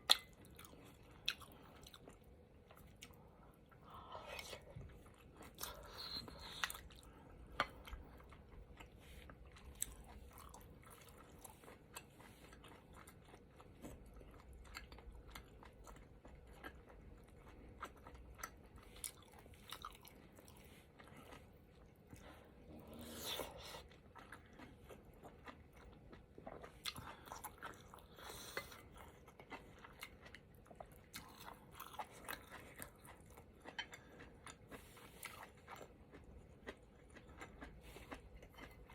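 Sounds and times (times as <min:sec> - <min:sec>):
close-miked chewing: 0:00.0 - 0:38.9.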